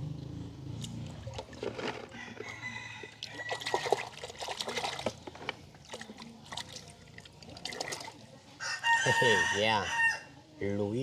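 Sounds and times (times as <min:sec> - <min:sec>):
water trickling and dripping: 0:02.5 - 0:08.5.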